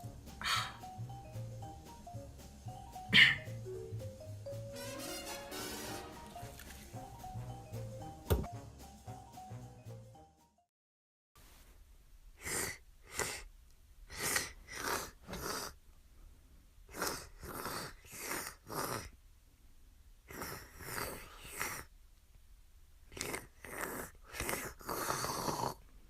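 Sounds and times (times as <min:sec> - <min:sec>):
rapid noisy breaths: 0:00.0 - 0:01.0.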